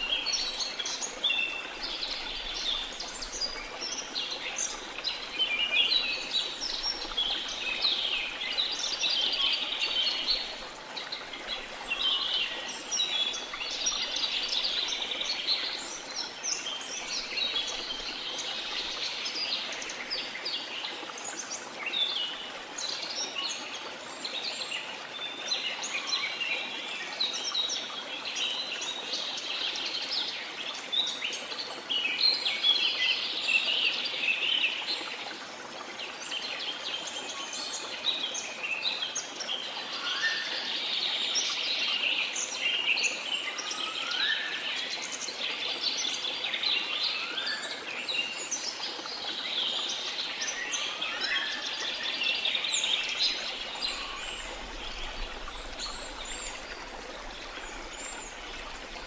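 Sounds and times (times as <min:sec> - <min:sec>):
waterfall rushing: 0:52.6 - 0:59.0.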